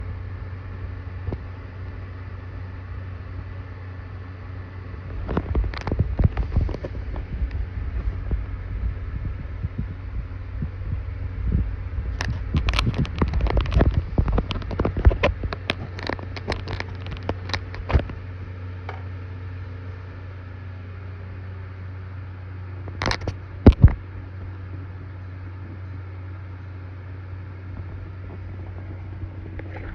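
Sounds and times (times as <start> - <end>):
computer humming: 0.0 - 29.9
clicking and crackling: 12.1 - 18.2, 22.9 - 24.0.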